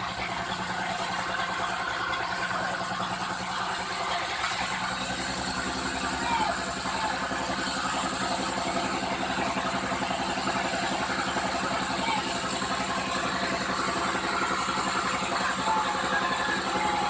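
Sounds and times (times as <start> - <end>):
engine idling: 0.0 - 17.0.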